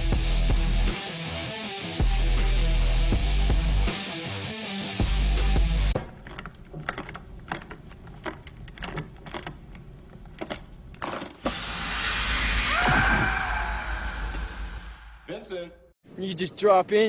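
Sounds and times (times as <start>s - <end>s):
music: 0.0s - 6.0s
rising rush of noise: 11.4s - 15.5s.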